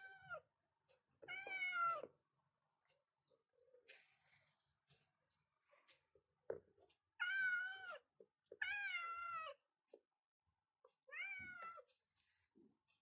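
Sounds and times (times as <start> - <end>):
cat meowing: 1.3 - 2.1, 7.2 - 9.6, 11.1 - 11.9.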